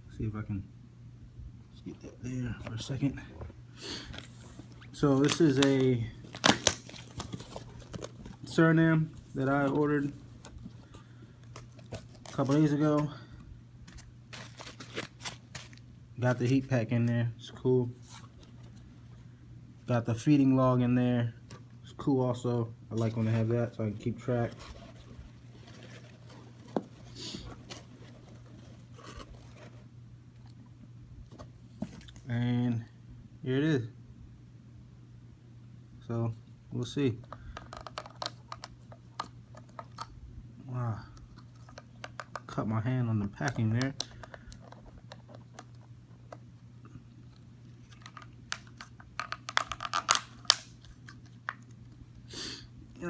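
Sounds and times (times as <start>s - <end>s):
steady low hum: 0.0s - 53.0s
packing material scraping and tearing: 4.0s - 13.1s, 13.9s - 16.6s, 23.0s - 29.8s.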